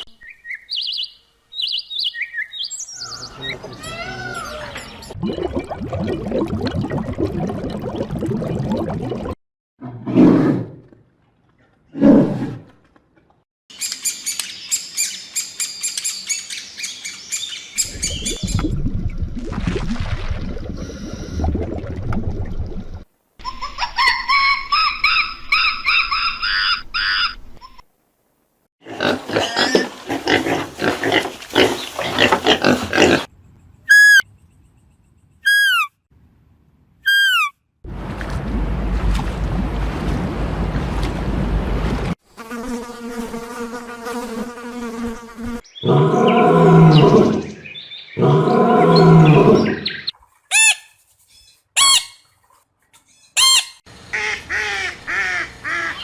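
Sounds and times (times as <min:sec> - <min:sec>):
rising pitched animal calls: 0:02.9 - 0:05.2, 0:33.9 - 0:34.2, 0:35.4 - 0:36.0, 0:37.0 - 0:37.6
short falling whistles: 0:33.9 - 0:34.3, 0:35.4 - 0:36.0, 0:37.1 - 0:37.6
low rumbling noise: 0:37.9 - 0:42.2.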